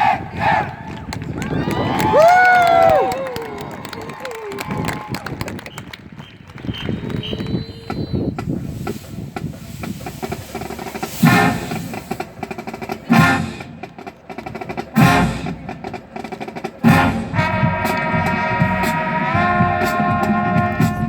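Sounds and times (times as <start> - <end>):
brass and drum accents: 6.6 - 21.0
fast snare drum patterns: 10.0 - 21.0
brass held chord: 16.9 - 21.0.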